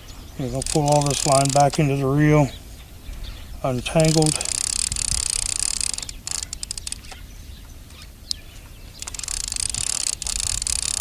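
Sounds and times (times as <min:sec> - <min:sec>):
fishing reel whirring: 0:00.4 - 0:01.7, 0:04.0 - 0:07.1, 0:09.0 - 0:11.0
reel clicks: 0:00.4 - 0:02.0, 0:03.8 - 0:07.2, 0:09.0 - 0:11.0.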